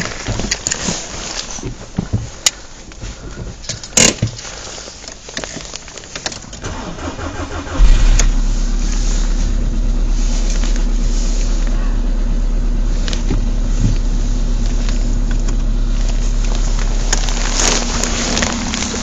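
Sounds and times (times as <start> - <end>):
car engine idling: 0.0 - 19.0
starter cranking: 3.7 - 9.0.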